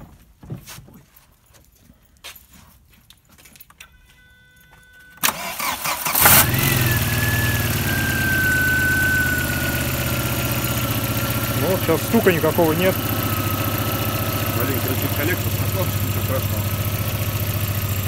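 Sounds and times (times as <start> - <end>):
starter cranking: 5.2 - 18.0
car engine revving and idling: 6.0 - 18.0.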